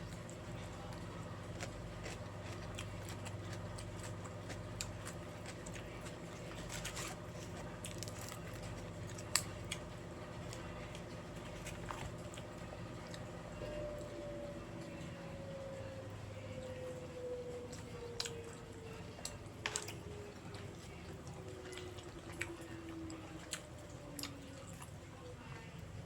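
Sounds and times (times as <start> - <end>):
steady low hum: 0.0 - 26.0
person chewing: 0.9 - 13.3, 17.7 - 20.0, 20.8 - 23.6, 24.2 - 24.9.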